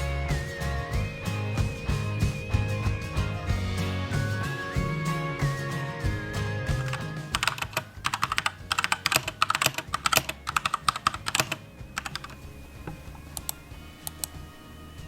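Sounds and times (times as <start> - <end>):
mechanical keyboard typing: 7.3 - 12.4.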